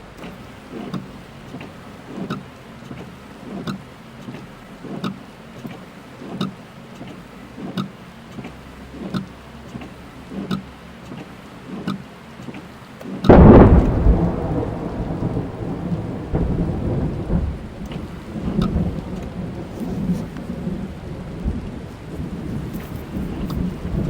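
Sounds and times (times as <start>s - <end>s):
rain on car body: 0.0s - 24.0s
thunderclap rumbling: 13.3s - 24.0s.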